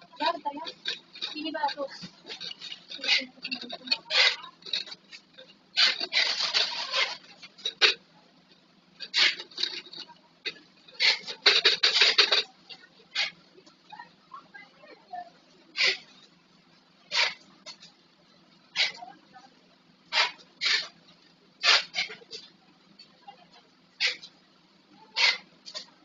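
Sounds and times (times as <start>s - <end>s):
plastic bottles clattering: 0.1s - 8.0s.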